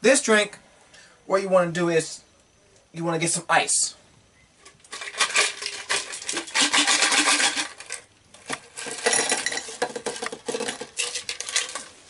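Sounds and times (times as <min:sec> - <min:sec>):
ice cubes clinking: 0:04.9 - 0:12.0.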